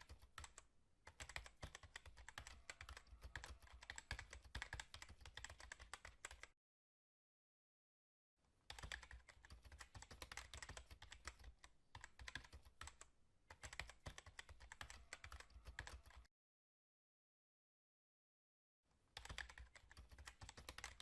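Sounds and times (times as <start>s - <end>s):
keyboard typing clicks: 0.0s - 6.5s, 8.7s - 16.3s, 19.2s - 21.0s.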